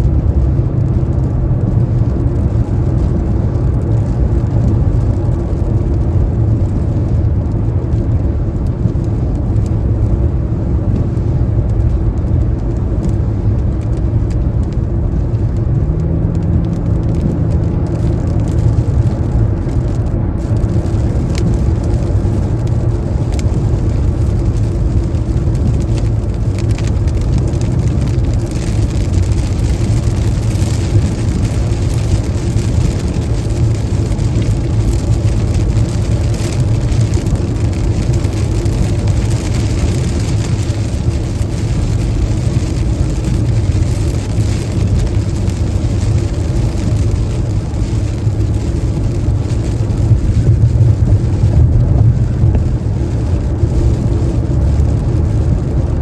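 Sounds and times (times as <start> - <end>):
road and tyre rumble: 0.0 - 56.0
hiss of rain and spray: 0.1 - 56.0.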